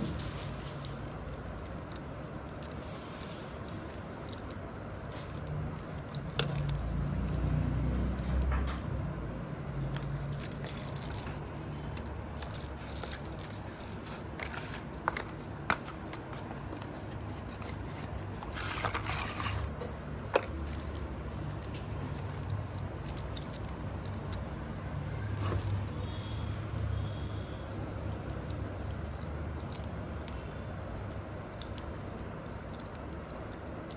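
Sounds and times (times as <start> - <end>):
packaging rustle: 12.5 - 22.6.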